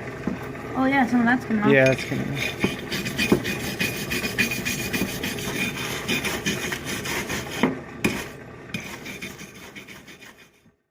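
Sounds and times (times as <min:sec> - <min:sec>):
brush scrubbing metal: 0:01.9 - 0:10.7.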